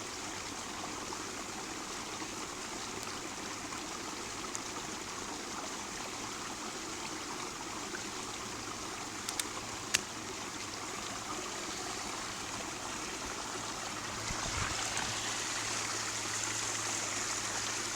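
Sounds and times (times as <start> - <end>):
creek flowing and splashing: 0.0 - 17.9
sharp clicks: 9.2 - 10.1.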